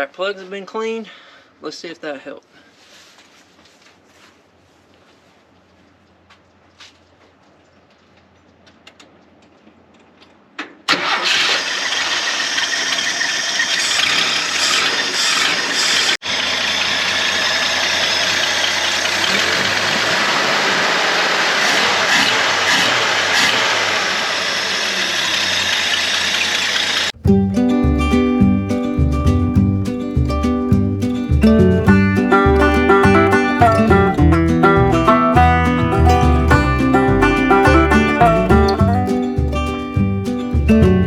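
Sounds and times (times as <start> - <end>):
pickup truck engine starting and running: 10.9 - 41.0.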